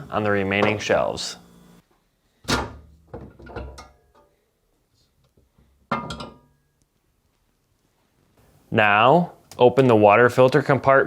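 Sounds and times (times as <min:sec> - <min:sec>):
fridge shelves knocking and clunking: 0:02.5 - 0:03.9.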